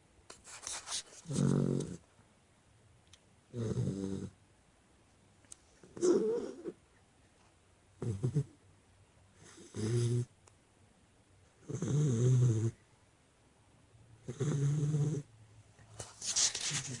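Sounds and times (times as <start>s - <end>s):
puppy snoring: 1.2s - 2.0s, 3.5s - 4.4s, 5.8s - 6.8s, 8.0s - 8.6s, 9.4s - 10.4s, 11.6s - 12.8s, 14.2s - 15.3s.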